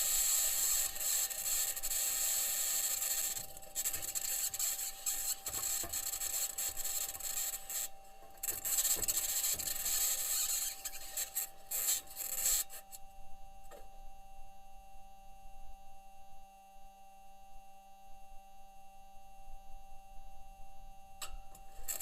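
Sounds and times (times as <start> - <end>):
rough high-pitched hiss: 0.0 - 13.0
faint steady hum: 0.0 - 22.0.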